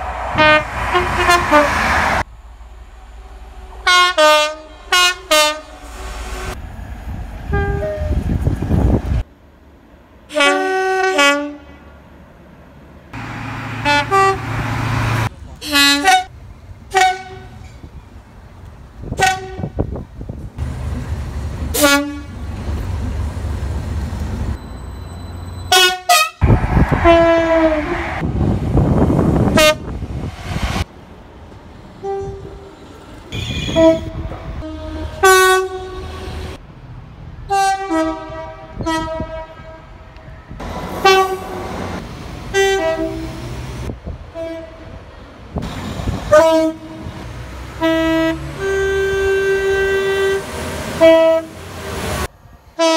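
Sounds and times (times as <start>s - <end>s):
low rumble of rail and engine: 0.0s - 52.9s
train horn blasts: 0.3s - 2.2s, 3.8s - 6.6s, 7.5s - 8.2s, 10.3s - 11.8s, 13.2s - 16.3s, 16.9s - 17.7s, 19.1s - 19.8s, 21.7s - 22.4s, 25.7s - 28.2s, 29.5s - 29.9s, 32.0s - 32.7s, 33.3s - 36.6s, 37.5s - 41.7s, 42.5s - 43.6s, 44.3s - 45.0s, 46.3s - 51.7s.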